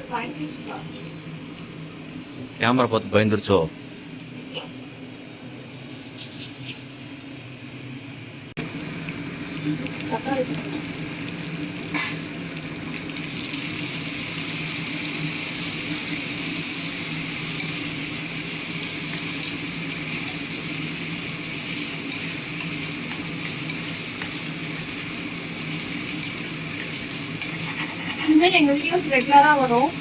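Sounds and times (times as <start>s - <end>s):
oil sizzling in a pan: 5.6s - 7.4s, 8.6s - 30.0s.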